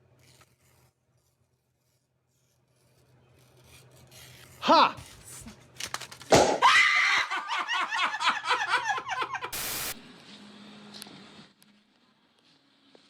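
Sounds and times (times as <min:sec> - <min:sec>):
sudden loud knock: 0:06.3 - 0:06.7
person laughing hard: 0:06.6 - 0:10.0
burst of hiss: 0:09.5 - 0:10.0.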